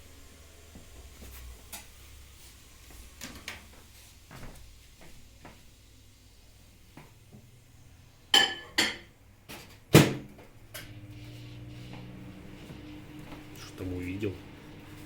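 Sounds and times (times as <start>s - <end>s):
dishes clinking: 8.3s - 9.1s
low steady hum: 10.7s - 15.0s.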